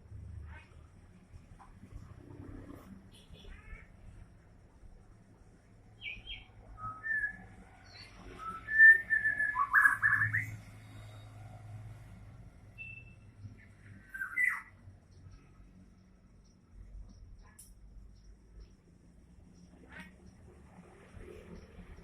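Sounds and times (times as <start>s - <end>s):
bird singing whistled notes: 6.0s - 10.7s, 12.8s - 13.3s, 14.0s - 14.7s.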